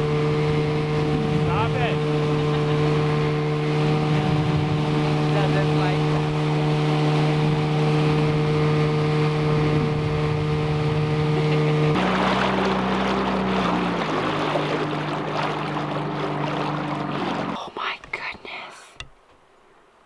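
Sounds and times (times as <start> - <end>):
outboard motor running: 0.0 - 17.7
hiss of water and wind: 8.9 - 20.0.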